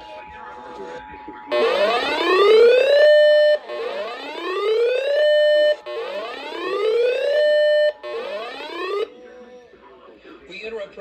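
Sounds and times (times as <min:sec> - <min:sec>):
electronic alert siren: 0:01.5 - 0:09.1.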